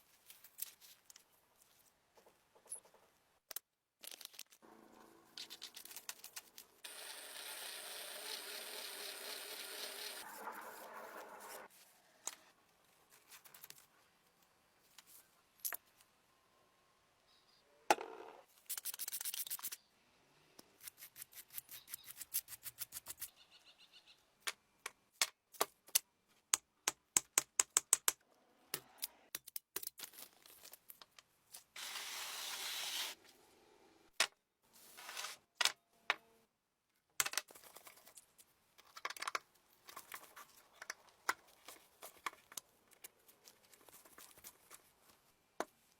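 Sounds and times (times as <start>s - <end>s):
short bursts of hiss: 31.8s - 33.2s.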